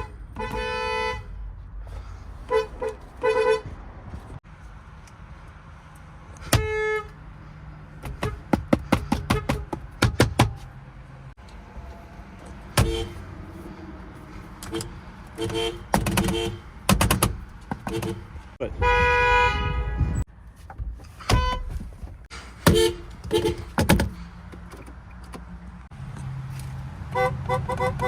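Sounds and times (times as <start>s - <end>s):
car horn honking: 0.0s - 1.4s, 2.5s - 3.7s, 6.4s - 7.2s, 12.6s - 13.5s, 14.6s - 16.8s, 17.8s - 20.3s, 21.3s - 21.8s, 22.6s - 23.9s, 27.1s - 28.0s.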